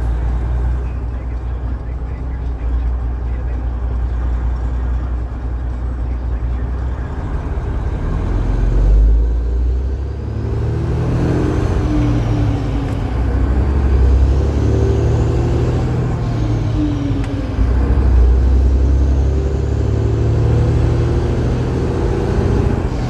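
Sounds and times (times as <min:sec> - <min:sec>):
diesel engine droning under load: 0:00.0 - 0:23.0.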